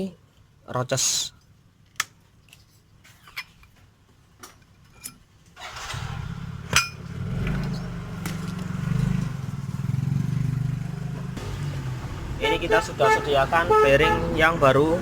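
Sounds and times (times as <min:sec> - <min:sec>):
motorcycle engine running: 0:06.2 - 0:14.2.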